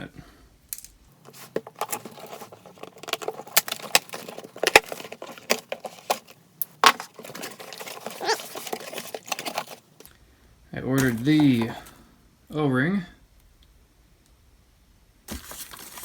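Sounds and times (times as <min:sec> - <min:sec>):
cardboard box packaging rustling: 0:01.2 - 0:09.9, 0:15.3 - 0:16.0.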